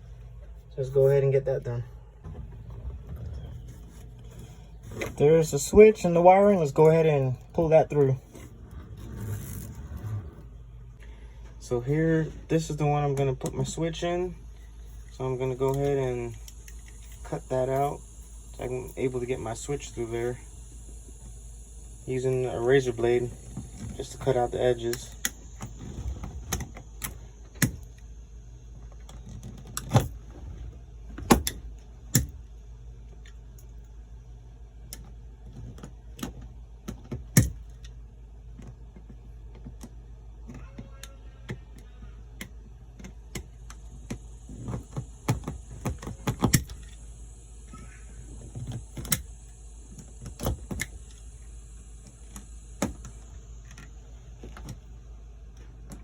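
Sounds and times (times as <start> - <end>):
low hum: 0.0 - 35.7.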